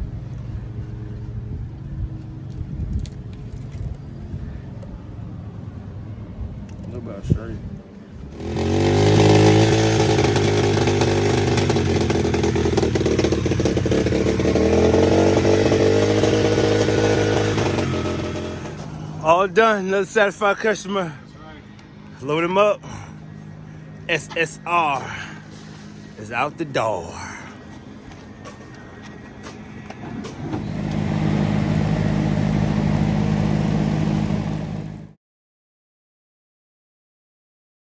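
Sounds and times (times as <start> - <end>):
dirt bike engine running: 8.3 - 19.0, 24.0 - 26.4, 27.5 - 35.1.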